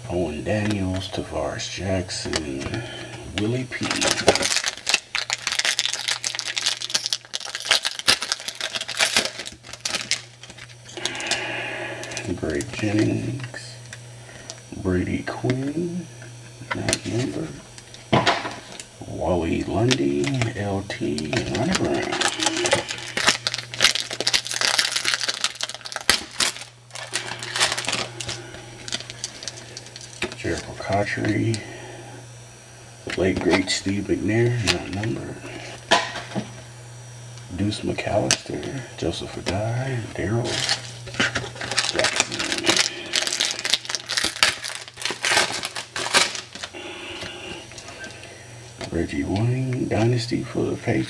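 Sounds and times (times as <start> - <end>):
foil wrapper crinkling and tearing: 3.4 - 11.4, 19.8 - 31.0, 40.4 - 48.1.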